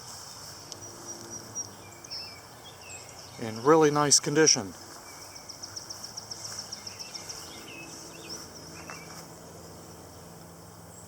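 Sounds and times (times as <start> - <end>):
bird calls: 0.7 - 9.3.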